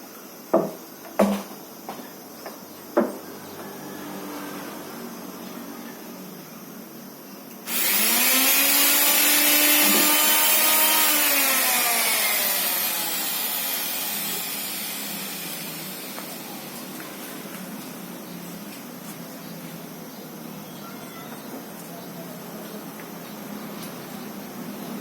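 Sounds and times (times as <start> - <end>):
miter saw motor whining: 7.7 - 16.7.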